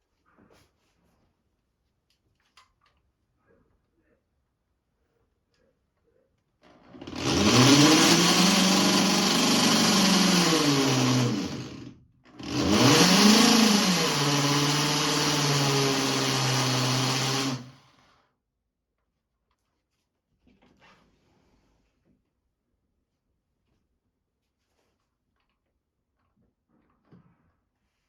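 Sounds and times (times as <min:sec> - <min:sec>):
small electric motor whining: 0:07.0 - 0:17.9.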